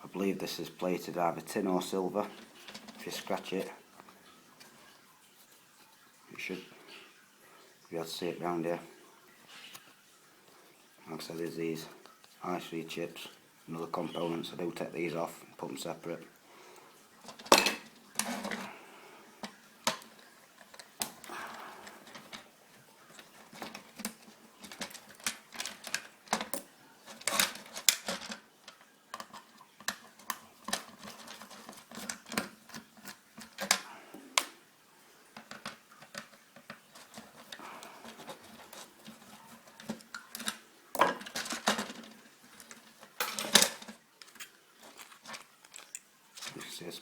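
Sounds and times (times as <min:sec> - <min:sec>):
hand tools and parts clattering: 0:02.2 - 0:03.7, 0:17.2 - 0:18.8, 0:19.4 - 0:34.5, 0:35.4 - 0:46.7.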